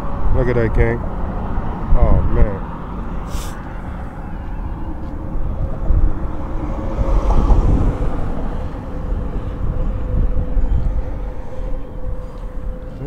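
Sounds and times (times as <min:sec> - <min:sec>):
engine hum: 0:00.0 - 0:13.0
wind rumbling on microphone: 0:00.0 - 0:13.0.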